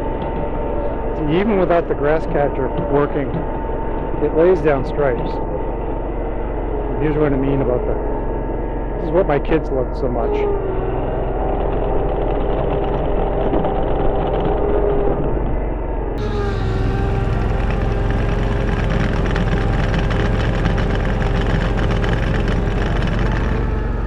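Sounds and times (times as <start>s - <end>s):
riding mower engine running: 16.2s - 24.0s.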